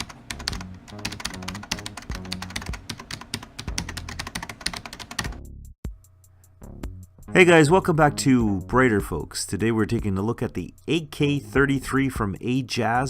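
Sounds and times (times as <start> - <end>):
mechanical keyboard typing: 0.0 - 5.4
music with low tones: 0.0 - 13.0.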